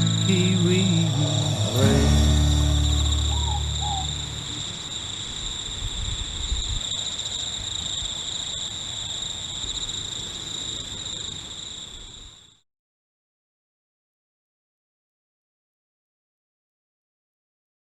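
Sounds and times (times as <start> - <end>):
low uneven rumble: 0.0 - 4.8
insects trilling: 0.0 - 12.6.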